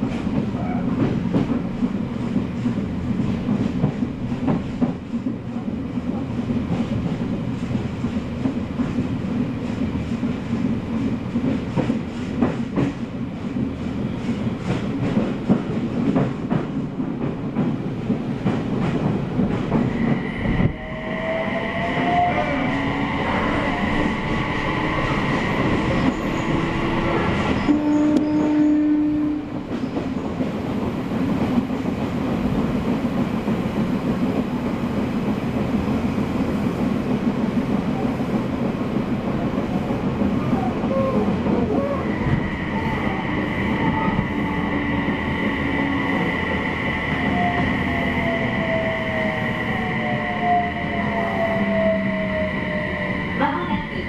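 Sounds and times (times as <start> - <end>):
train rumble: 0.0 - 54.0.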